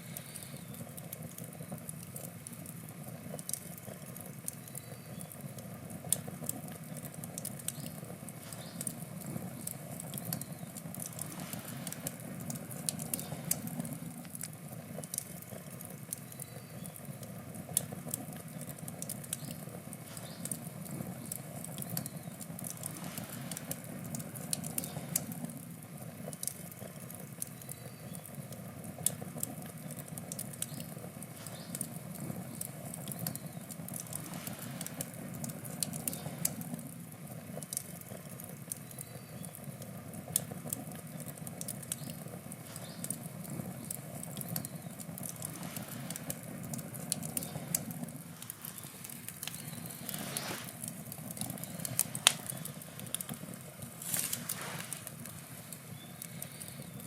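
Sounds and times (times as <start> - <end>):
campfire flame rushing: 0.0 - 57.0
wood crackling and popping: 0.0 - 57.0.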